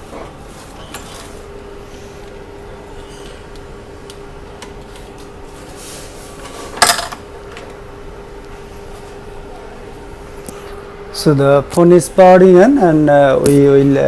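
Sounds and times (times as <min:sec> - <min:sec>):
steady hum: 0:00.0 - 0:14.0.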